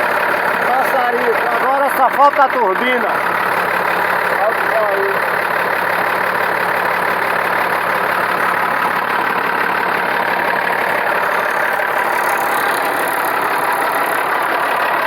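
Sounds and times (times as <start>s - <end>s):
diesel engine idling: 0.0s - 15.0s.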